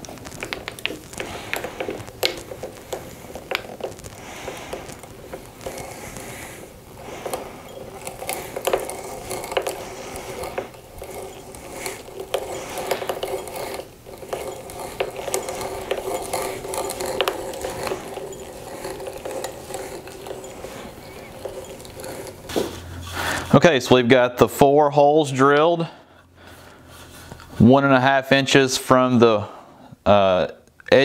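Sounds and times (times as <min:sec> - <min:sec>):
hand drill grinding and clicking: 0:00.0 - 0:23.6.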